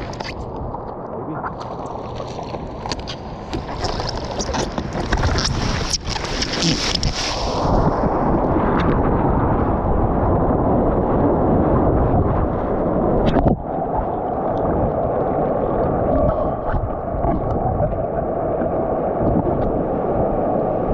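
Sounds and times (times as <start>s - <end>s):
wind buffeting microphone: 0.0s - 20.9s.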